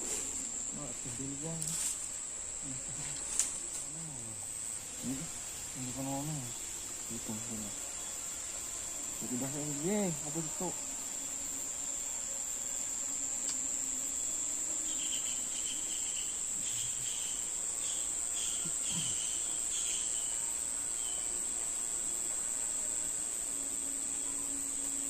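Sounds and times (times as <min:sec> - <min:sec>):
insects droning: 0:00.0 - 0:25.0.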